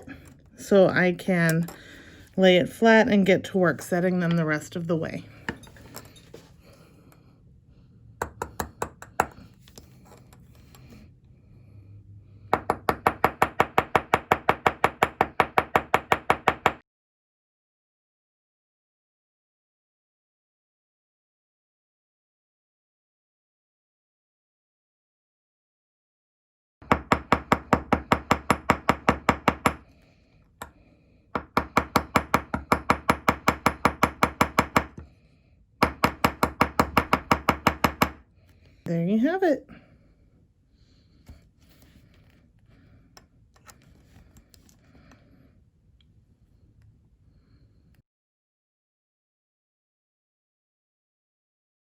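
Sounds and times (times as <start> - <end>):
hammer tapping on rivets: 8.2 - 9.4, 12.6 - 16.8, 31.4 - 35.1, 35.8 - 38.2.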